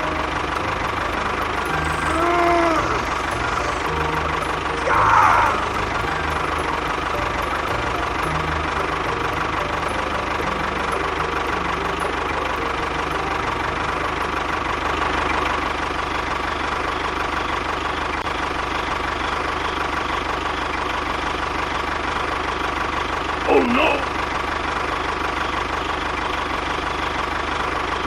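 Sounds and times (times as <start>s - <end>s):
small motor running: 0.5s - 19.9s.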